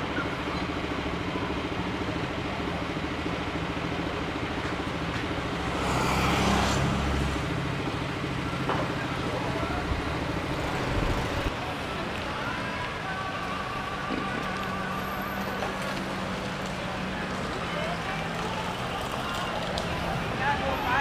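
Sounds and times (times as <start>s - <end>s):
traffic engine rumble: 0.0s - 21.0s
vehicle passing close: 5.5s - 11.5s.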